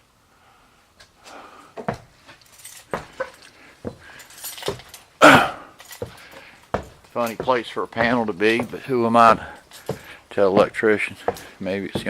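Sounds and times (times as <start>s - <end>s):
light handling noise: 1.0s - 12.0s
footsteps on a floor: 1.8s - 5.0s, 5.9s - 12.0s.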